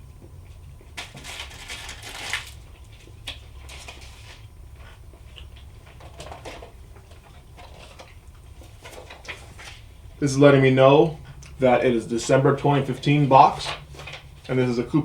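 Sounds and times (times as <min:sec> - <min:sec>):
snack packaging rustling: 0:00.8 - 0:09.9.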